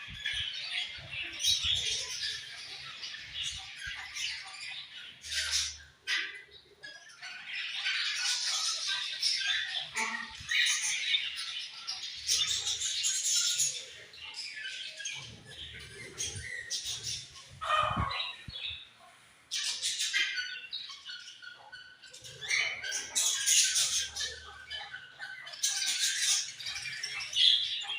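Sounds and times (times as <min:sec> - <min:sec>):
budgerigars chirping and chattering: 0:00.0 - 0:27.9.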